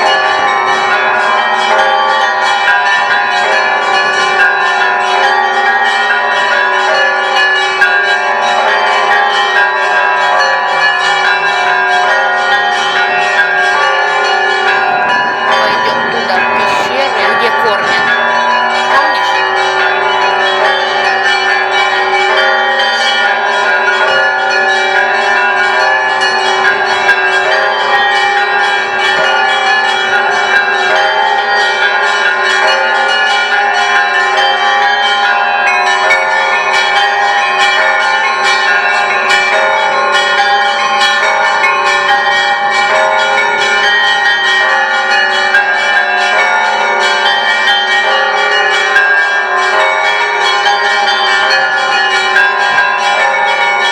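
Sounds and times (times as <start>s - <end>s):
large bells humming: 0.0s - 53.9s
small church bells striking: 0.0s - 53.9s.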